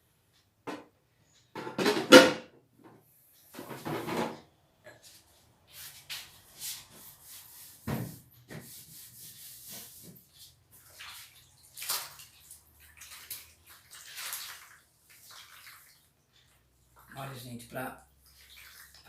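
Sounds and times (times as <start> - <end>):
knock: 7.9 - 8.6
water splashing and dripping: 9.5 - 19.0.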